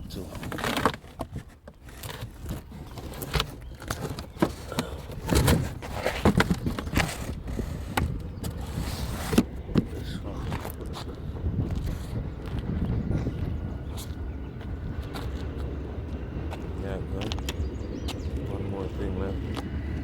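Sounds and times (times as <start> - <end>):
low rumble: 4.6 - 20.0.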